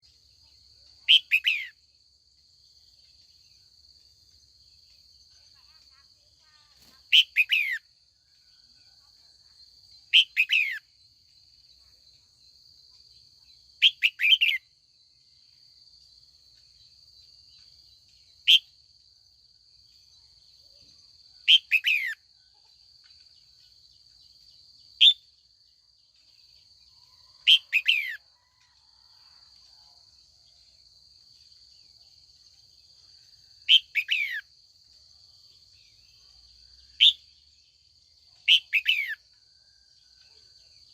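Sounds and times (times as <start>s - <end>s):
bulbul bright calls: 6.9s - 7.8s, 10.1s - 10.8s.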